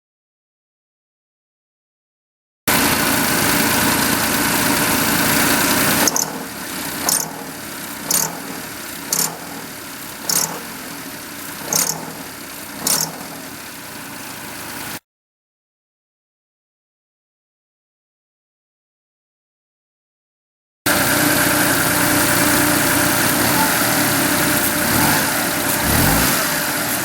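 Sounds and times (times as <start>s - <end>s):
car engine running: 2.7s - 15.0s, 20.9s - 27.0s
sharp chirping belt noise: 5.8s - 15.0s.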